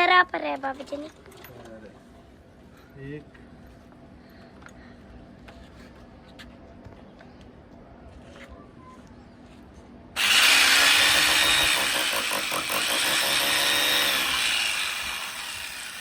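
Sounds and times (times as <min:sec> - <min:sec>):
electric drill boring into wall: 0:10.2 - 0:16.0.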